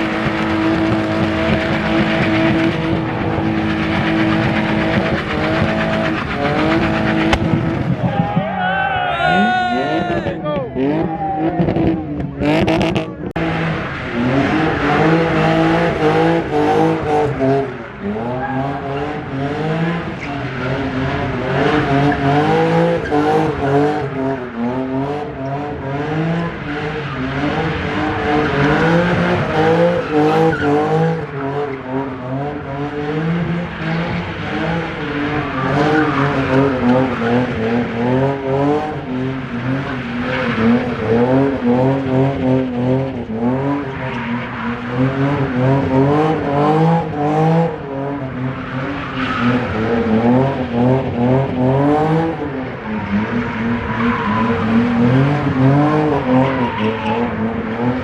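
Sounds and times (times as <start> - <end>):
car engine revving: 0.0 - 58.0
sharp cracks: 2.9 - 8.4.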